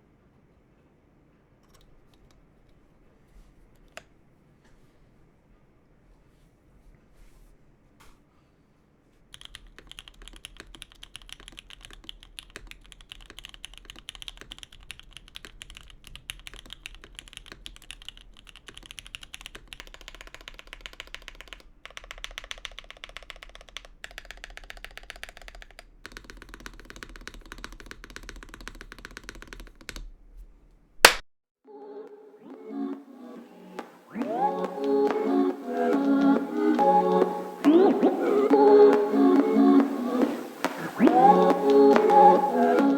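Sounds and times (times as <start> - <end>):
mechanical keyboard typing: 9.3 - 30.2.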